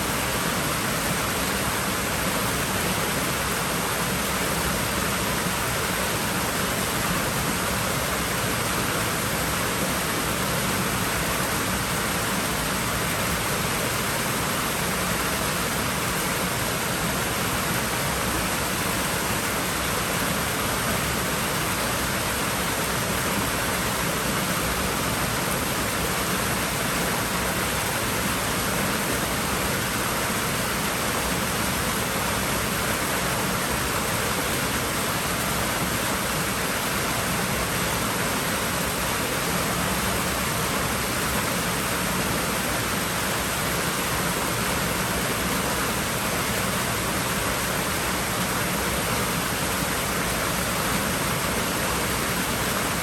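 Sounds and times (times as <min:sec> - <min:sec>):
pool water rushing: 0:00.0 - 0:53.0.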